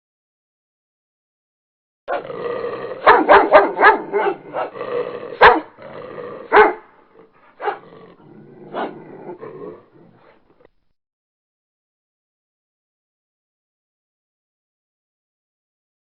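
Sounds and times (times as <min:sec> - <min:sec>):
dog barking: 0:02.1 - 0:02.3, 0:03.0 - 0:05.8, 0:06.4 - 0:07.9, 0:08.7 - 0:09.4.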